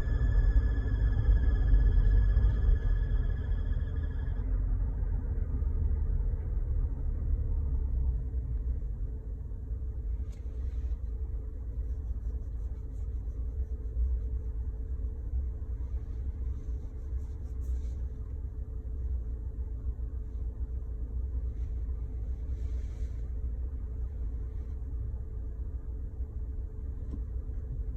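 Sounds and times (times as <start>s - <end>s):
transmission whining: 0.0s - 4.6s
truck low rumble: 0.0s - 27.9s.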